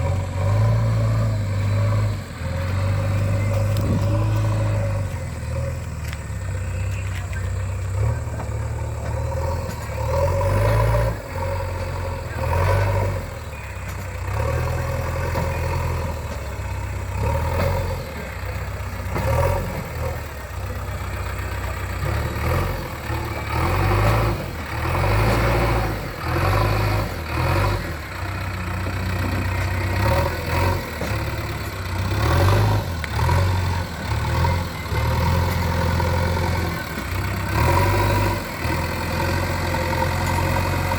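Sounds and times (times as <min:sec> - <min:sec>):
diesel engine revving: 0:00.0 - 0:40.9.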